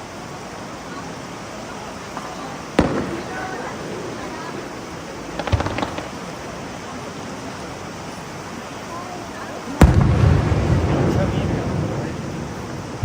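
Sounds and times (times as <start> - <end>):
crowd chatter: 0.0 - 13.0
fireworks crackle: 0.0 - 13.0
outdoor hiss: 0.0 - 13.0
firework bang with rumbling echo: 2.8 - 6.5, 9.8 - 13.0.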